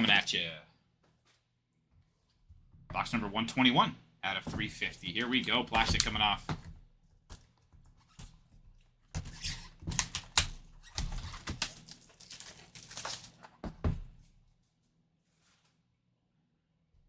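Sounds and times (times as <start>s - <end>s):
plastic shrink-wrap crinkling: 9.3s - 13.6s.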